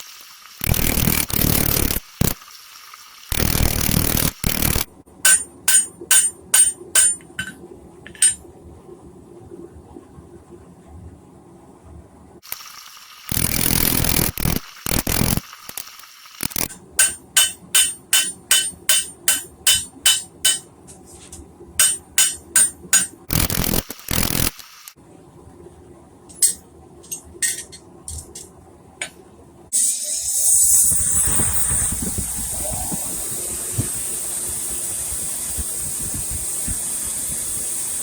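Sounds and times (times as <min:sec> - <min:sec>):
hammer ringing on anvil: 0:05.3 - 0:08.4, 0:17.0 - 0:20.7, 0:21.8 - 0:23.2.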